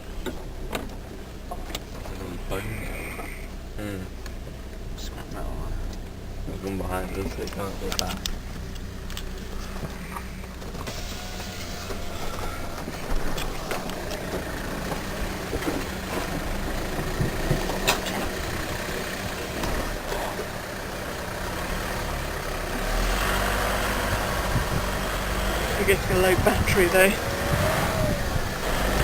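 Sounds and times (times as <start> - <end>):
diesel engine running: 0.0 - 29.0
knocks and rattles: 7.2 - 29.0.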